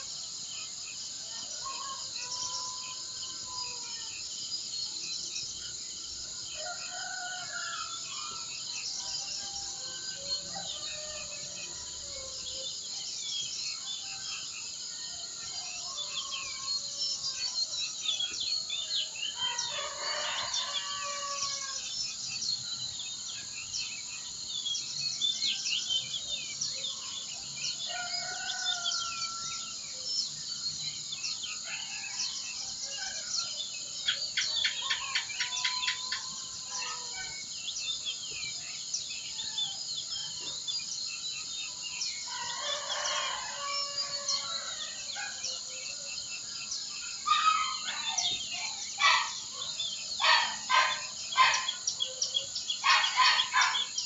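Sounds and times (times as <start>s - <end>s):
high insect drone: 0.0s - 54.0s
birds chirping and whistling: 46.9s - 54.0s.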